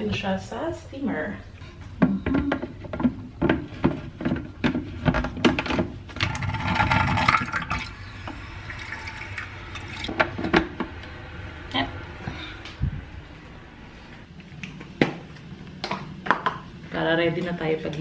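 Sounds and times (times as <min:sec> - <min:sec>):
water running from a tap: 0:07.5 - 0:10.1.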